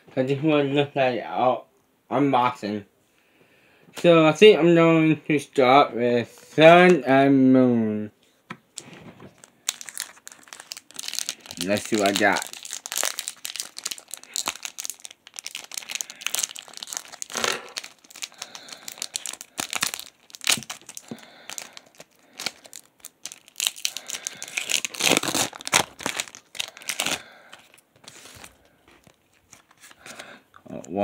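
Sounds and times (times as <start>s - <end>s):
foil wrapper crinkling and tearing: 8.8s - 30.3s.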